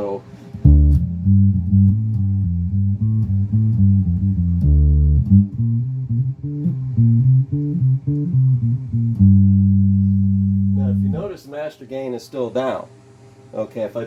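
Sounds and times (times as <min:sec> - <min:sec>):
electric guitar riff: 0:00.6 - 0:11.3.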